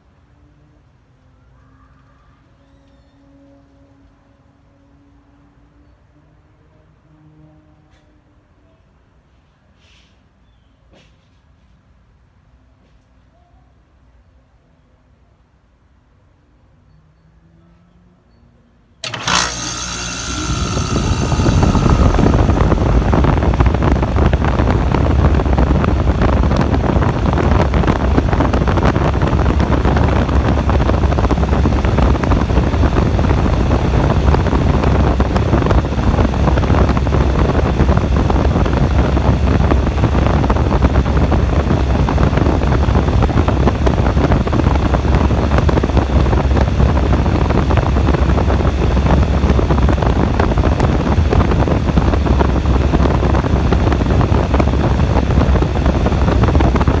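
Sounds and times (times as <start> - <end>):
brief whine: 19.0 - 31.2
air conditioner running: 19.0 - 57.0
fan rushing air: 19.0 - 57.0.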